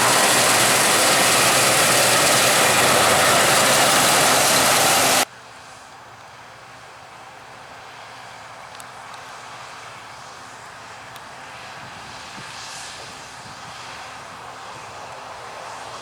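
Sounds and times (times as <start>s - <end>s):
combine harvester running: 0.0s - 5.2s.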